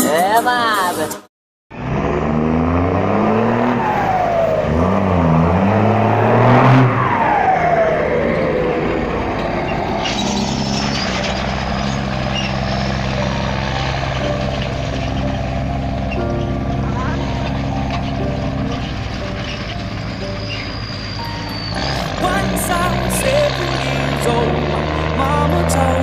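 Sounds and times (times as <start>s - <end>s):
diesel truck engine running: 1.7s - 26.0s.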